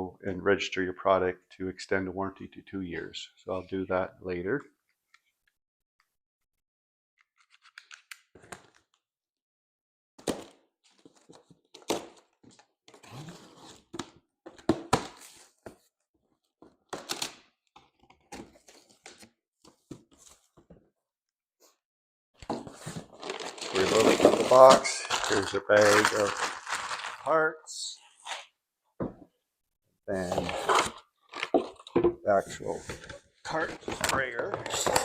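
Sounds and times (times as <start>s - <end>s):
cardboard tearing: 22.7s - 27.3s.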